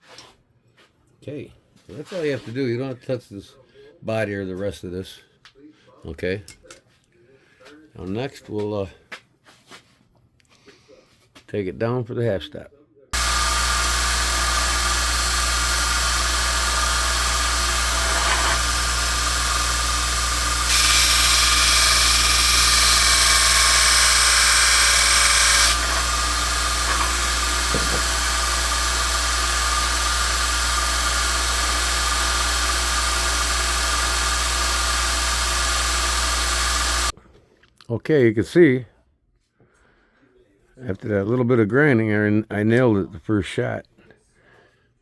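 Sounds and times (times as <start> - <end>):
electric grinder grinding metal: 13.2 - 37.1.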